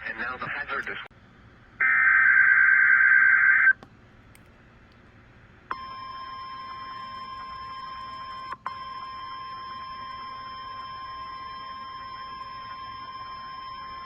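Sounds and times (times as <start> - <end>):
steady warning alarm tone: 5.7 - 14.0.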